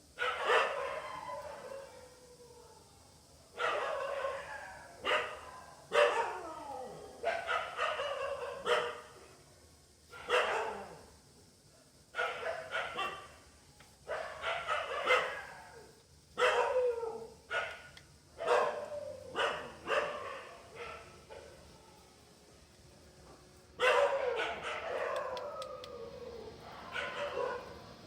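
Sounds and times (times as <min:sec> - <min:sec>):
dog barking: 0:00.2 - 0:01.7, 0:03.6 - 0:06.4, 0:07.2 - 0:09.1, 0:10.1 - 0:11.0, 0:12.2 - 0:13.4, 0:14.1 - 0:15.5, 0:16.4 - 0:16.8, 0:17.5 - 0:21.6, 0:23.8 - 0:25.8, 0:26.6 - 0:27.8.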